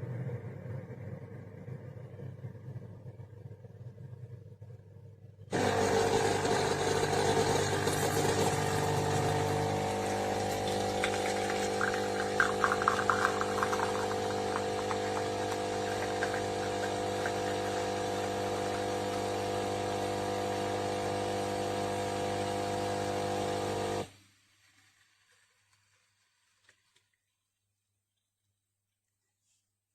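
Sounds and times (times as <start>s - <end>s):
coffee machine pump humming: 5.5s - 24.1s.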